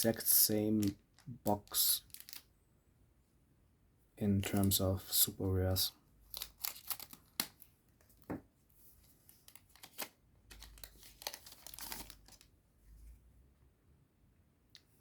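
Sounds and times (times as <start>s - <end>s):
foil wrapper tearing and crinkling: 0.0s - 2.5s, 6.3s - 7.5s, 9.5s - 12.4s.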